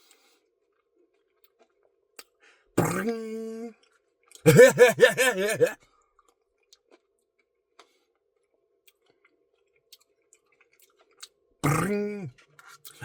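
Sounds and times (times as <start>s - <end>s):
man warbling wordless sing-song: 4.5s - 5.8s
mouth clicks from eating: 11.6s - 13.0s.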